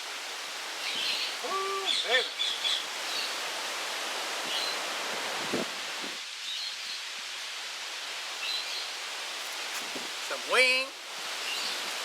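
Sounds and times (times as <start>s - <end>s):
outdoor background hiss: 0.0s - 12.0s.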